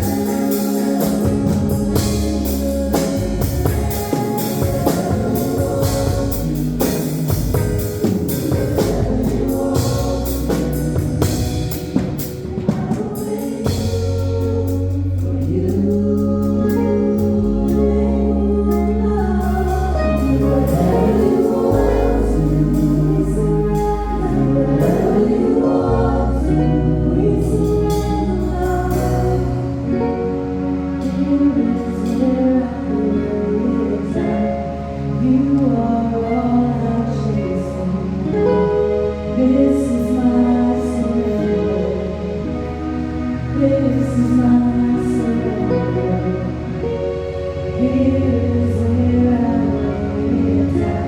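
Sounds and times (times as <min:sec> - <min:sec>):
long held bass notes: 0:00.0 - 0:51.0
several people singing: 0:00.0 - 0:51.0
worship band playing gospel song: 0:00.0 - 0:51.0
drum hits: 0:01.1 - 0:13.1.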